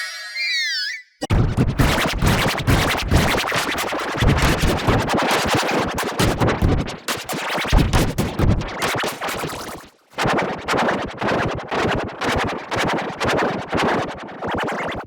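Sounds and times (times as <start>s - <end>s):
distorted remix music: 0.0s - 5.2s, 6.0s - 9.0s.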